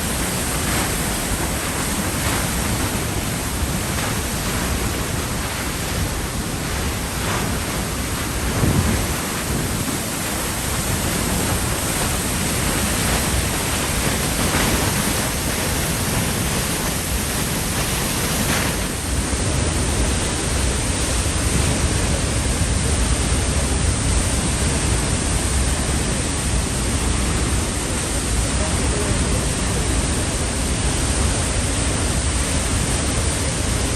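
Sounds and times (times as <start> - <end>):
waterfall roaring: 0.0 - 33.9.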